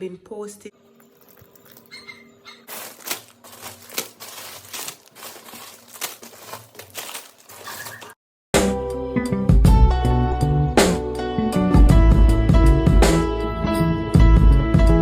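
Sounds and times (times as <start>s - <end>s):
crinkling and rustling: 0.9s - 8.2s.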